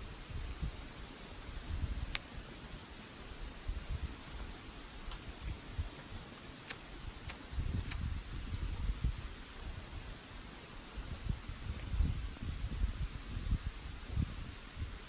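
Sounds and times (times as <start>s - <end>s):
wood fire crackling: 0.0s - 9.4s
wind rumble on microphone: 0.0s - 15.0s.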